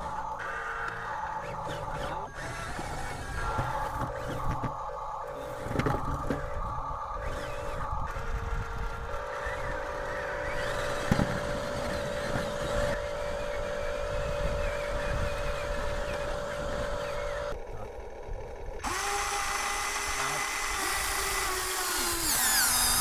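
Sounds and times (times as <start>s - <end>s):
electric toy motor whining: 0.0s - 17.6s, 18.8s - 23.0s.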